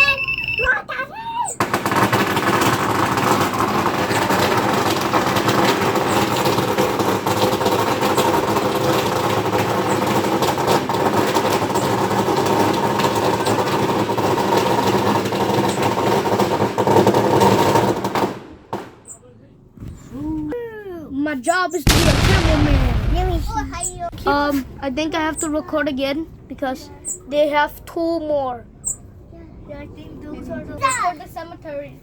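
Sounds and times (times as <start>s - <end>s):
firework crackling: 1.6s - 18.4s, 21.9s - 25.1s.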